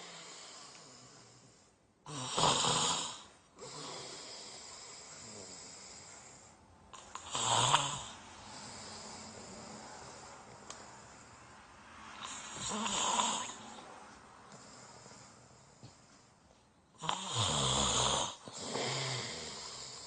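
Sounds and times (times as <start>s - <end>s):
man snoring: 0.0s - 11.3s, 12.2s - 13.8s, 17.0s - 20.0s.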